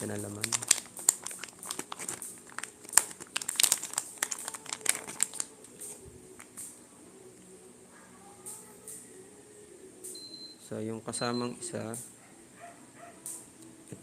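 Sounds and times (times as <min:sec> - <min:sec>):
packaging crinkling and crackling: 0:00.0 - 0:06.6.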